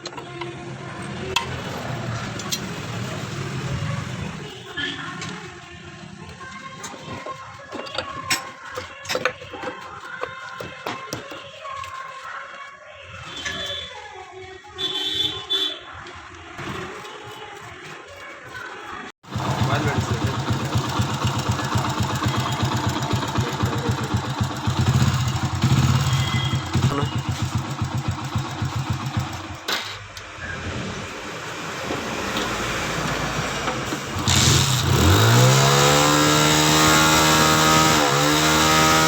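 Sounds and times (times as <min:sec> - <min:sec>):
motorcycle engine running and revving: 0:19.3 - 0:29.7, 0:33.2 - 0:39.0.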